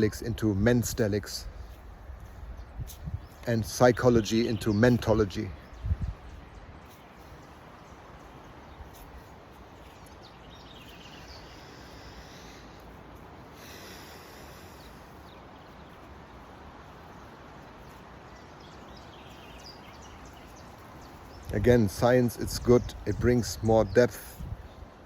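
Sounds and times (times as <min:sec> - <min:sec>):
faint background ambience: 0:00.0 - 0:25.0
high chirping calls: 0:00.0 - 0:25.0.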